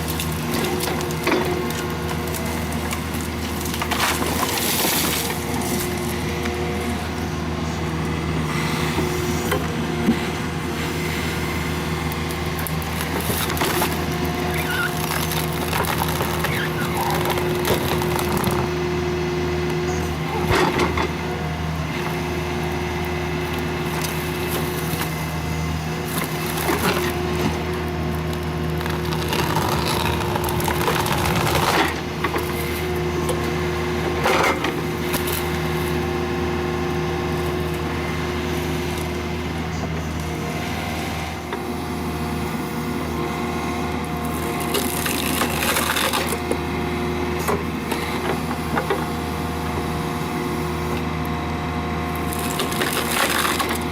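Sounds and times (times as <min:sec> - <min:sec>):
heavy machine engine running: 0:00.0 - 0:53.9
wood cracking and splintering: 0:12.5 - 0:18.7, 0:28.2 - 0:32.6, 0:44.6 - 0:46.5, 0:52.2 - 0:53.9.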